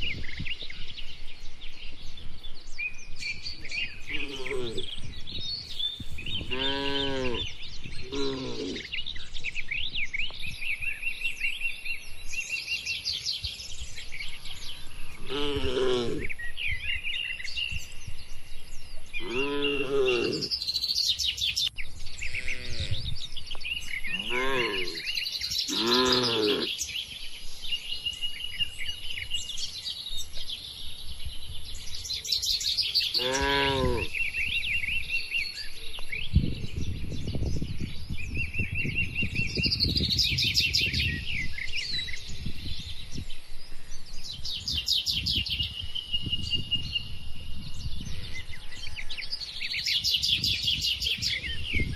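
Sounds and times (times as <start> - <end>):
birds chirping: 0.0 - 51.9
cattle mooing: 4.1 - 4.9, 6.5 - 7.5, 8.1 - 8.9, 15.2 - 16.3, 19.2 - 20.5, 22.3 - 23.0, 24.1 - 25.1, 25.7 - 26.7, 33.2 - 34.1.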